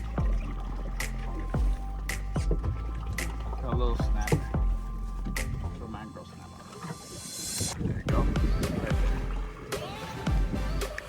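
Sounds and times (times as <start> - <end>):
bass hits sliding down: 8.1 - 9.6.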